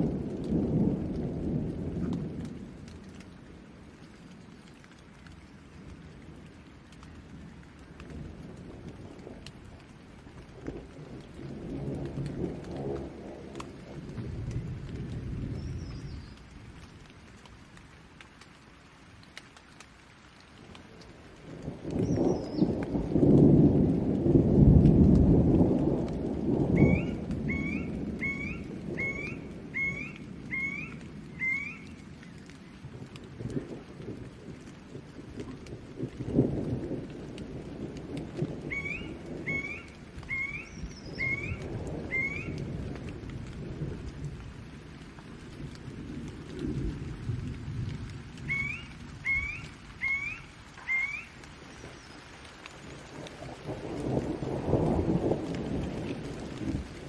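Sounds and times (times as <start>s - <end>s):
thunder rumbling: 0.0s - 3.9s, 5.3s - 17.2s, 21.2s - 57.0s
steady rain: 0.0s - 57.0s
bird calling upward hooked notes: 26.8s - 31.9s, 48.5s - 51.3s.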